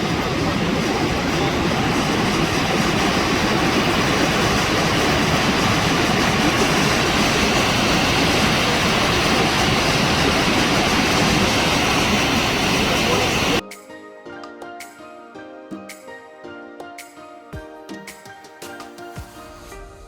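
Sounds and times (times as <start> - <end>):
large waterfall rushing: 0.0 - 13.6.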